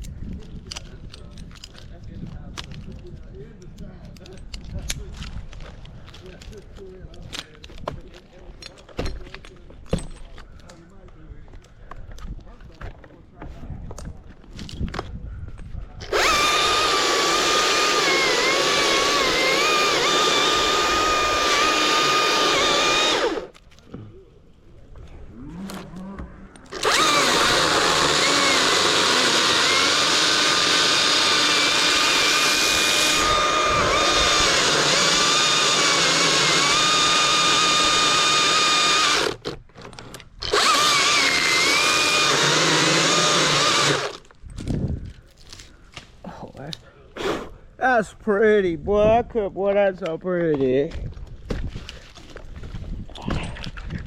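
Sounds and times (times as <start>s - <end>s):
chainsaw at full throttle: 16.1s - 23.5s, 26.7s - 39.5s, 40.4s - 44.2s.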